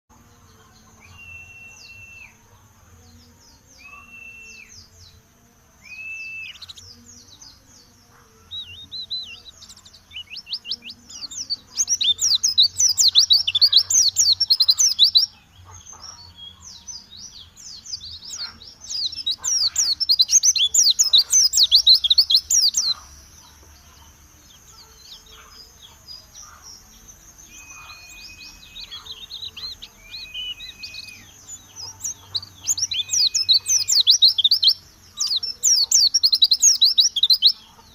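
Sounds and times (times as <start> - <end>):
flat whistled bird notes: 1.0 - 2.4, 3.7 - 4.8, 27.4 - 34.6
soft bird twittering: 5.8 - 37.9
bird chattering trills: 18.3 - 37.9.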